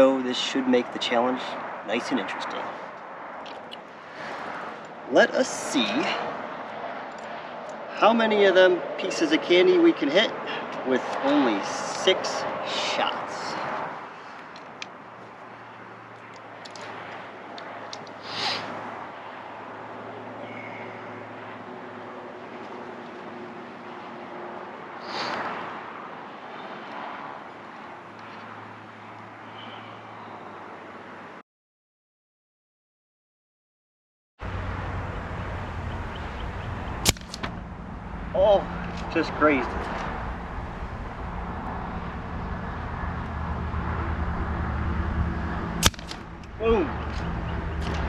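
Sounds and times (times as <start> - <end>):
suppressed air rifle shot: 37.0 - 37.6, 45.8 - 46.3.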